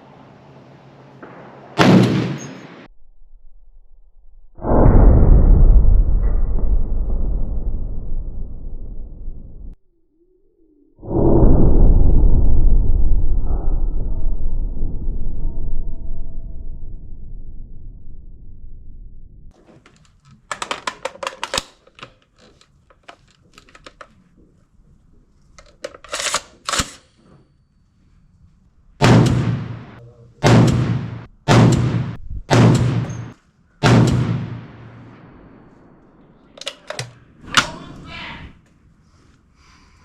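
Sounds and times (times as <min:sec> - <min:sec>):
rifle shots: 0:01.2 - 0:02.9, 0:29.0 - 0:36.8
rattling metallic clicks: 0:19.8 - 0:24.2, 0:25.6 - 0:27.3, 0:36.6 - 0:37.7.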